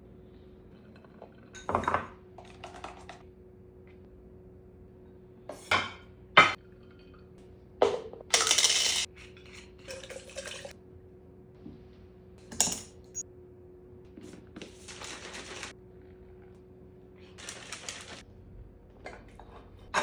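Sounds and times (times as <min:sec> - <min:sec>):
dishes and cutlery clattering: 0:01.0 - 0:02.1.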